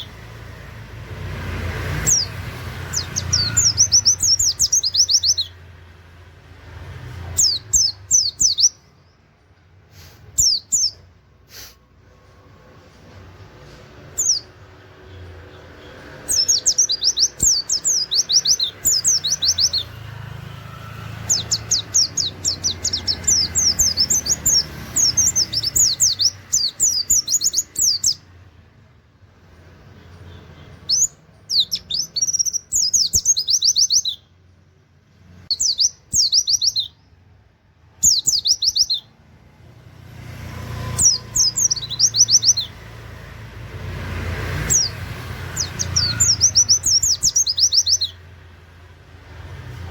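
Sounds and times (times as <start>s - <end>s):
bird singing rapid high notes: 1.8s - 5.9s, 7.0s - 9.4s, 10.2s - 11.1s, 13.7s - 28.4s, 29.6s - 34.4s, 35.4s - 37.2s, 37.9s - 39.2s, 40.7s - 43.2s, 44.4s - 48.5s.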